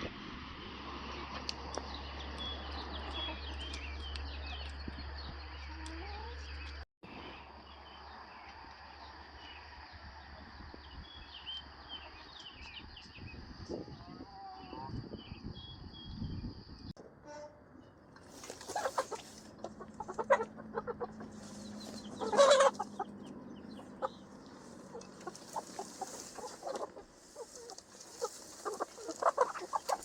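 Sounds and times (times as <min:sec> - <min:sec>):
small birds chirping: 0:01.2 - 0:16.9, 0:18.3 - 0:30.0
chickens clucking: 0:02.4 - 0:05.0, 0:05.6 - 0:06.8, 0:18.2 - 0:30.0.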